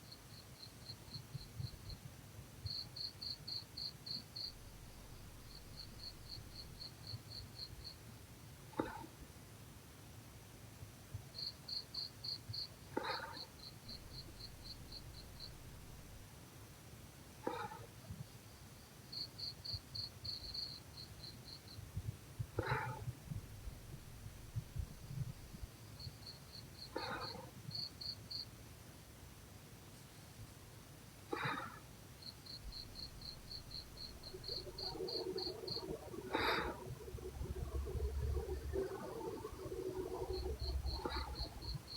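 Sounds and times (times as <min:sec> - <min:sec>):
insect chirping: 0:02.6 - 0:08.0, 0:13.6 - 0:16.2, 0:24.5 - 0:28.5, 0:32.2 - 0:41.9
low rasping snore: 0:33.0 - 0:41.9.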